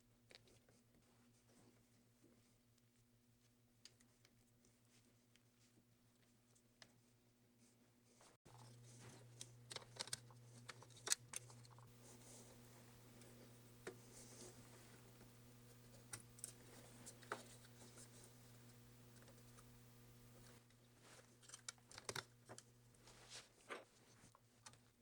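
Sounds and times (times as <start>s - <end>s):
steady low hum: 8.5s - 23.7s
clicks of small laptop parts: 8.6s - 11.9s, 21.4s - 22.7s.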